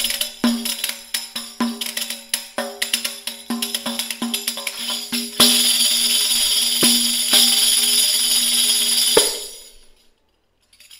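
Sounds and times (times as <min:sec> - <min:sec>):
shimmering jingle roll: 0:04.8 - 0:10.1.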